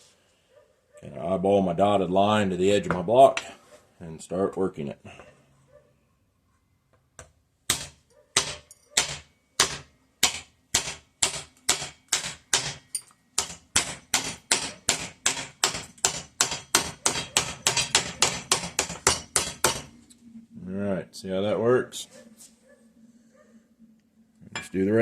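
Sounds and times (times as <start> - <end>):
hammer on metal: 7.7 - 19.9.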